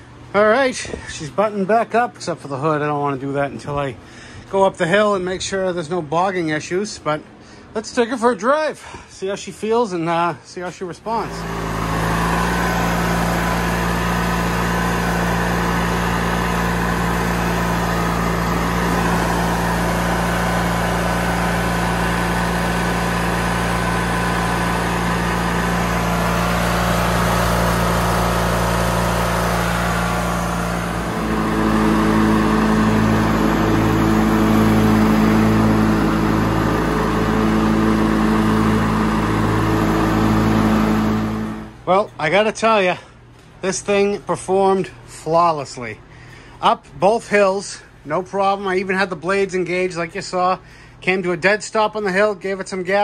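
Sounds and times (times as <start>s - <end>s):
riding mower engine running: 11.1s - 41.9s.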